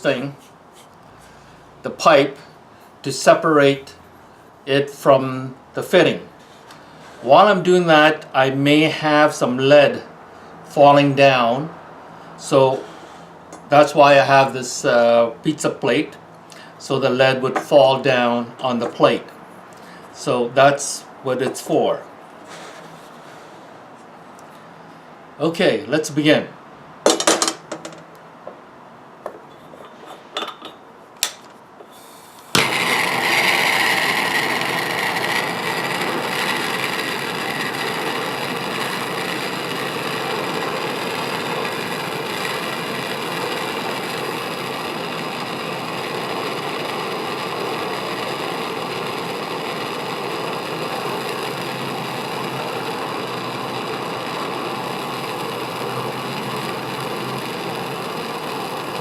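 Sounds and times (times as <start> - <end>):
gas torch flame rushing: 12.1 - 13.7, 22.4 - 24.1, 31.8 - 59.0
torch igniter clicks: 32.4 - 59.0.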